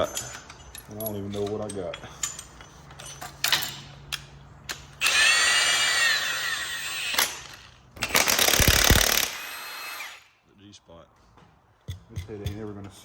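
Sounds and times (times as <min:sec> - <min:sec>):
power tool whining: 0:05.0 - 0:10.3.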